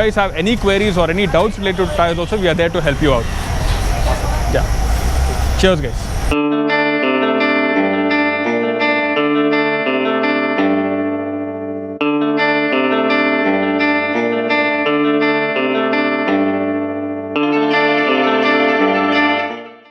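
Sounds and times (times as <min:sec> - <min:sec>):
effects guitar playing chords: 0:06.3 - 0:19.9.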